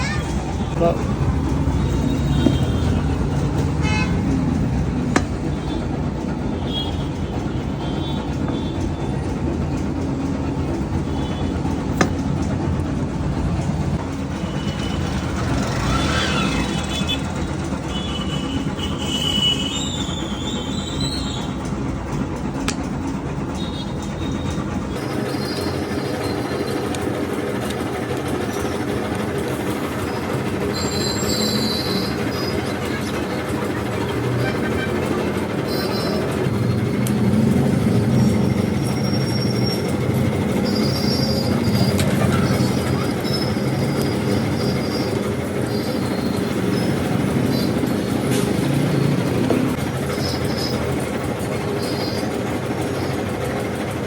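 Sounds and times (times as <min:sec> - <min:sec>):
train rumbling: 0:00.0 - 0:54.0
high-pitched squeals: 0:29.6 - 0:36.9.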